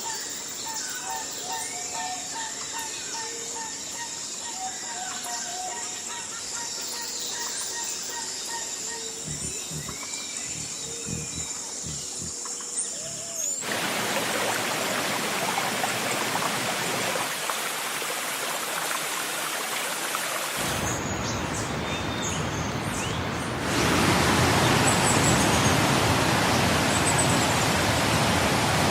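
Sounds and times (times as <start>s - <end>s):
bird calls and chirps: 0.0s - 13.6s
high-pitched insect drone: 0.0s - 13.6s
steady rushing noise: 23.4s - 28.9s.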